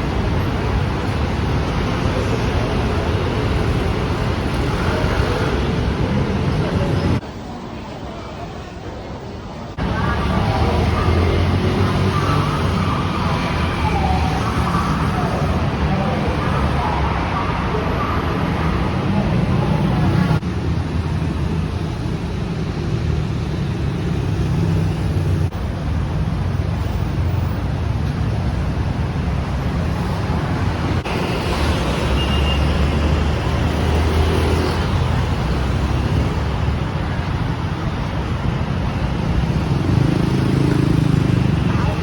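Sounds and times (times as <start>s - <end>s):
road traffic rumble: 0.0s - 42.0s.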